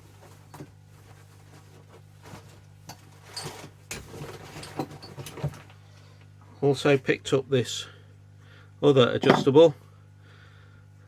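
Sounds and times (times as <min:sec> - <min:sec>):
steady low hum: 0:00.0 - 0:11.0
metal tools clinking: 0:02.9 - 0:05.6.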